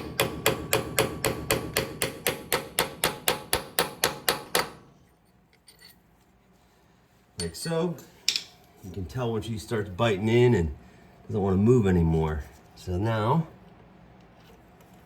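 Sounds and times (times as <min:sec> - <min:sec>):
hammer striking steel punch: 0:00.0 - 0:04.8.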